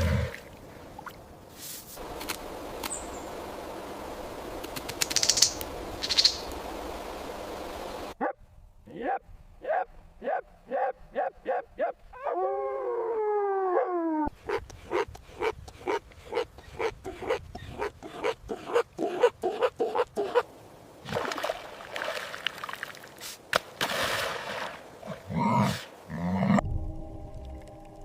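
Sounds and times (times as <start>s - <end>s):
dog barking: 9.0s - 12.0s.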